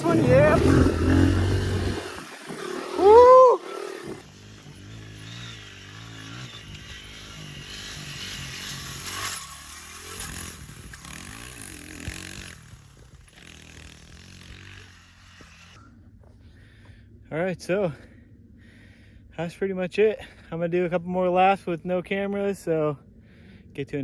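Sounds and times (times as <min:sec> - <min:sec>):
dirt bike engine revving: 0:00.0 - 0:15.8.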